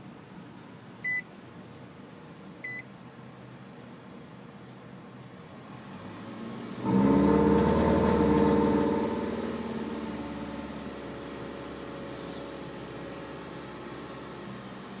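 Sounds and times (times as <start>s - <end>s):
car engine revving: 5.7s - 15.0s
snoring drone from air intake: 6.8s - 12.4s.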